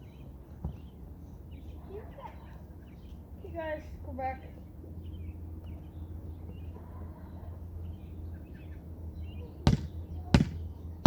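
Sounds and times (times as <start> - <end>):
ball bouncing on hard floor: 9.7 - 10.6.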